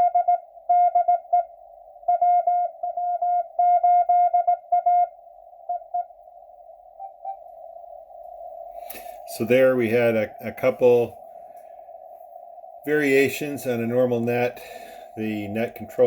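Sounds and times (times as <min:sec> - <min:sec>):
morse code tones: 0:00.0 - 0:06.2, 0:07.0 - 0:07.4
radio receiver hiss: 0:08.8 - 0:12.2, 0:12.8 - 0:16.0.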